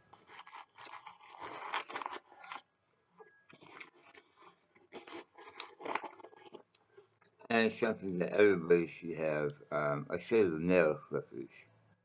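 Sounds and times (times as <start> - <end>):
gear rustling in a bag: 0.0 - 2.7.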